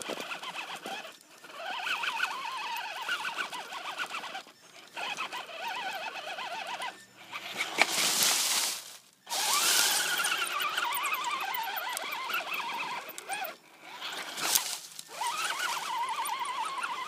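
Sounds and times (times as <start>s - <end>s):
electric motor whining: 0.0s - 17.0s
gritty hiss: 7.5s - 10.9s, 13.9s - 16.5s.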